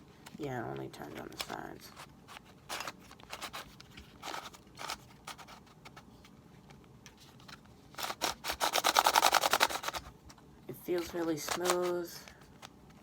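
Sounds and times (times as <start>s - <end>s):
puzzle clicking: 8.0s - 10.1s, 11.0s - 12.1s.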